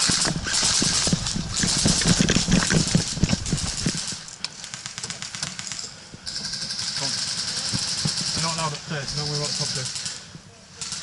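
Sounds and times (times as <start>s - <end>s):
gear and clothing rattling: 0.0s - 4.4s
running footsteps: 0.0s - 4.4s.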